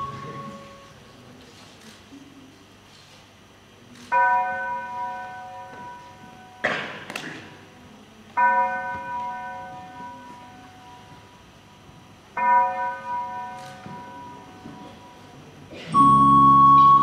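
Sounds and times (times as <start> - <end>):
bell ringing: 0.0 - 0.9, 16.0 - 17.0.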